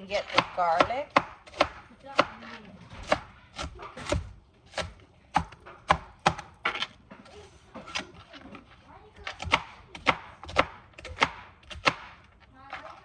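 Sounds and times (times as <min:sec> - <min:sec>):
knife chopping on cutting board: 0:00.2 - 0:06.9, 0:09.3 - 0:12.2.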